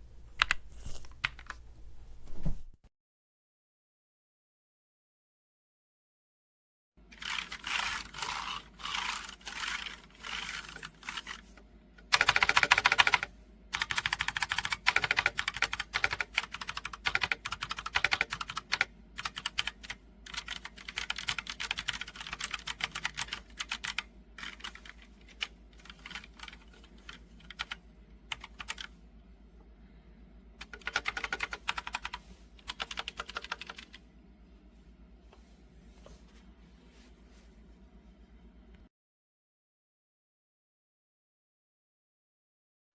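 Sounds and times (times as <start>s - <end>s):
mechanical keyboard keys clacking: 12.1s - 28.9s, 30.6s - 34.0s.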